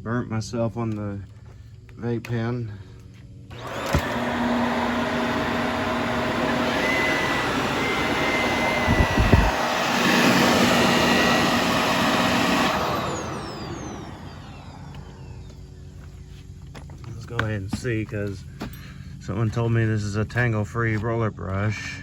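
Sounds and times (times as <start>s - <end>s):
motor winding down whine: 3.5s - 17.0s
vacuum cleaner running: 3.5s - 17.9s.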